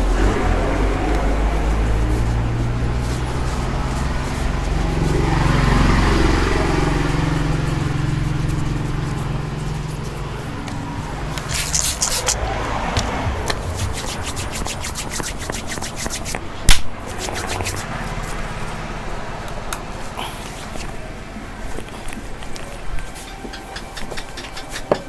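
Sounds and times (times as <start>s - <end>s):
vehicle engine rumbling past: 0.0s - 24.9s
hands rubbing and patting skin: 1.1s - 18.4s.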